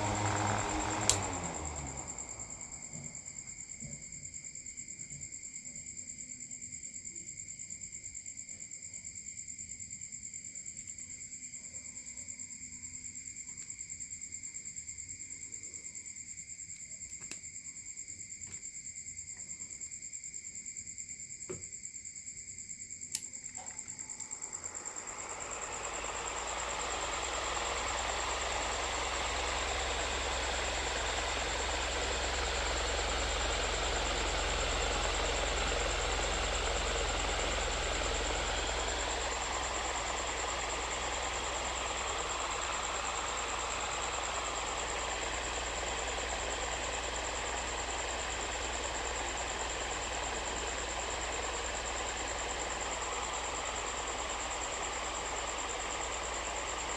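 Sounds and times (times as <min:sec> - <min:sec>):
small electric motor spinning: 0:00.0 - 0:03.4, 0:23.1 - 0:56.9
switch click: 0:01.0 - 0:01.4.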